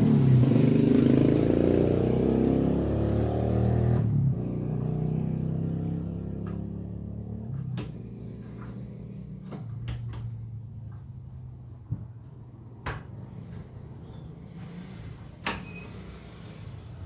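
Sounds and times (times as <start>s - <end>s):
sharp knocks and clanks: 11.8s - 13.8s.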